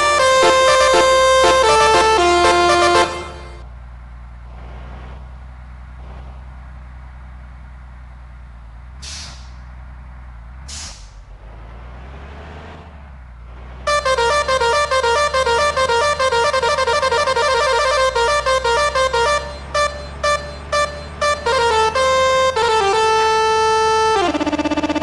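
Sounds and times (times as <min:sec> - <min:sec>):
musical air horns playing tune: 0:00.0 - 0:03.6, 0:13.9 - 0:24.7
low engine rumble: 0:00.0 - 0:25.0
short air hisses: 0:09.0 - 0:09.6, 0:10.7 - 0:11.2.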